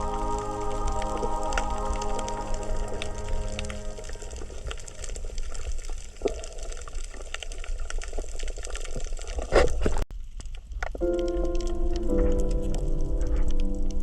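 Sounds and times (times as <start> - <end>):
soft music with held notes: 0.0 - 4.9, 11.0 - 14.0
rush of water: 0.0 - 7.0
low underwater rumble: 0.0 - 9.2, 10.2 - 14.0
underwater crackle of clicks: 0.1 - 14.0.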